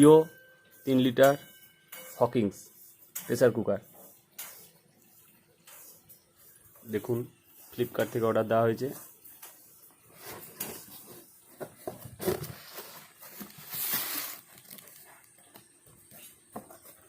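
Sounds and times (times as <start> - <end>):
packaging rustling: 11.8 - 17.0.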